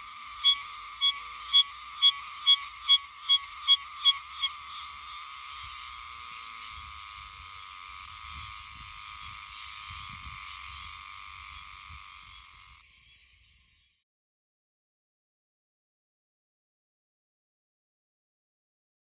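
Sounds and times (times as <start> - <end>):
cicada buzzing: 0.0 - 14.0.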